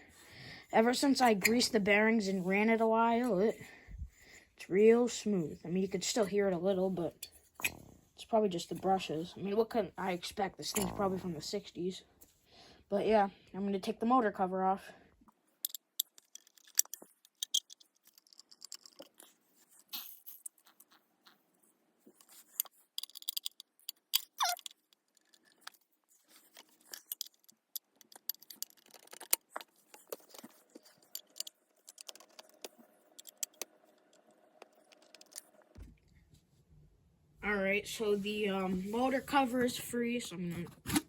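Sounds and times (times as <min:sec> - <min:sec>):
tool and screws clinking on metal: 0:15.6 - 0:19.3, 0:22.2 - 0:35.5.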